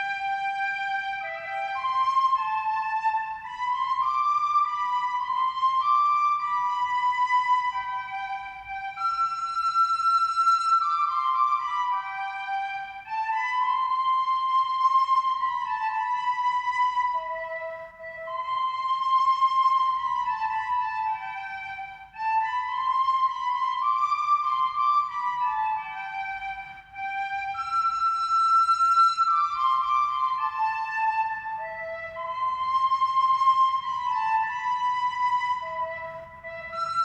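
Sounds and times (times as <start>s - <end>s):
high melody of held notes: 0.0s - 37.0s.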